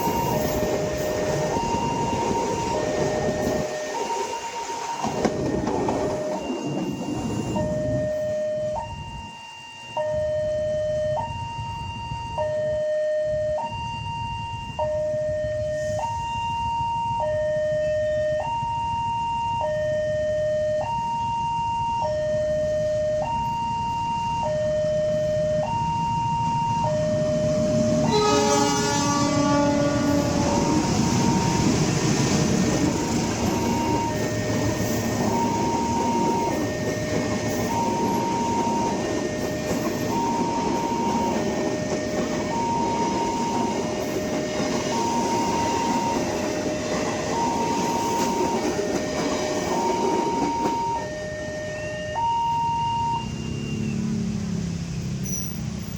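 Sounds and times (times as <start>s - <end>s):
train rumbling past: 0.0s - 9.2s, 13.4s - 55.9s
level-crossing alarm two-tone: 0.0s - 54.0s
locomotive horn: 27.2s - 32.0s.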